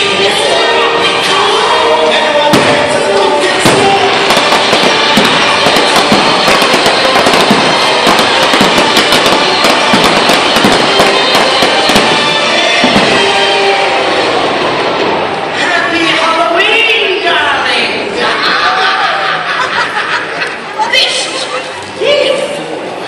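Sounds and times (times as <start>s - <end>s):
music soundtrack: 0.0s - 17.6s
fireworks bangs: 2.1s - 15.3s.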